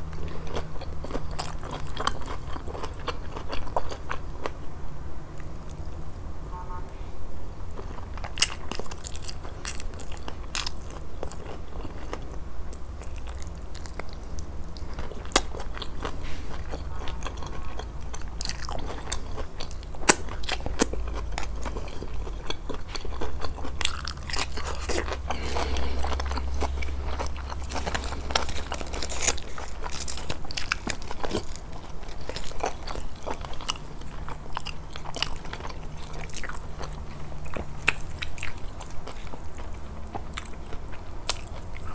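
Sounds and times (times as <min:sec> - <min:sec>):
chewing with crisp crunches: 0:00.0 - 0:06.8, 0:07.6 - 0:41.9
low hum: 0:04.8 - 0:08.1, 0:19.7 - 0:38.9.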